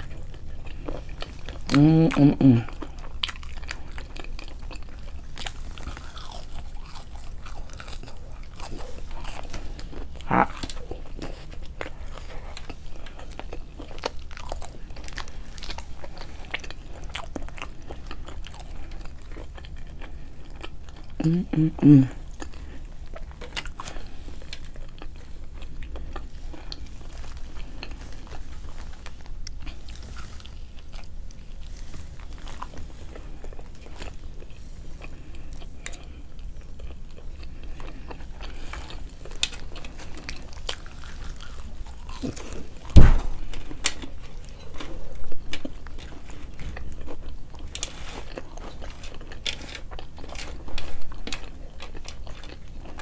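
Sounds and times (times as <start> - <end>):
chewing and biting food: 0.0 - 53.0
loud low thump: 43.0 - 43.4.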